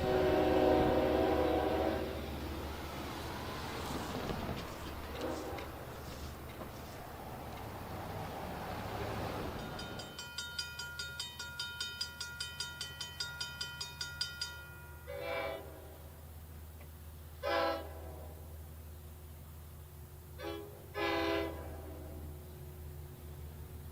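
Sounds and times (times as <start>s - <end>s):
locomotive horn blasts: 0.0s - 2.2s, 5.1s - 5.8s, 15.0s - 16.1s, 17.4s - 18.5s, 20.4s - 22.3s
bell ringing rapidly: 9.6s - 15.1s.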